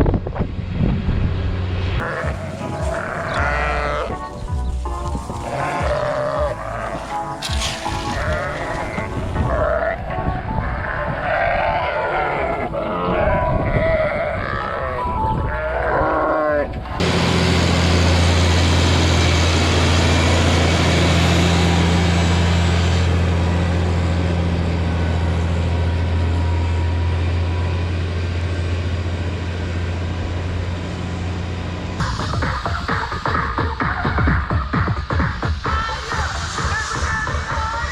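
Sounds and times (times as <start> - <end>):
low engine-like drone: 0.0 - 34.6
sheep bleating: 2.0 - 17.0.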